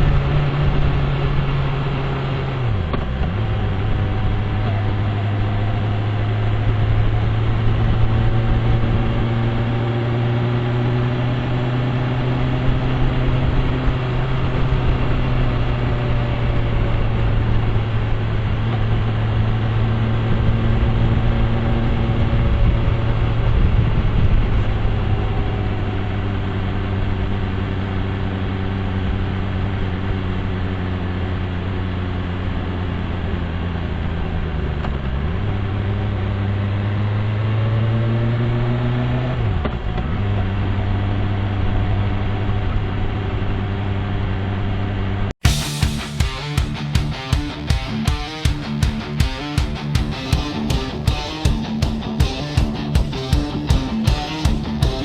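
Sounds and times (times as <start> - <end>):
road and wind noise: 0.0 - 45.6
motorcycle engine running: 45.4 - 55.0.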